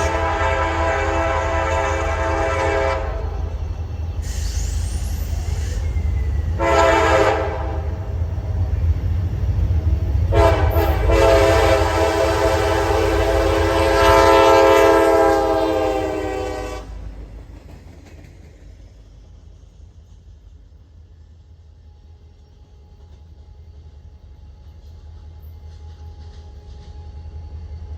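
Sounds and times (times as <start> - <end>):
locomotive air horn blasts: 0.0 - 3.4, 6.6 - 8.1, 10.3 - 17.1
diesel engine low rumble: 0.0 - 6.6.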